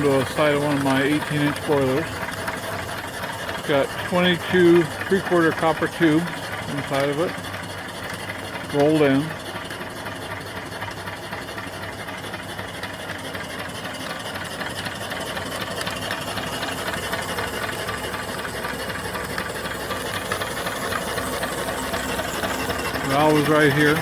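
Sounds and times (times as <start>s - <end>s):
steam engine running: 0.0s - 24.0s.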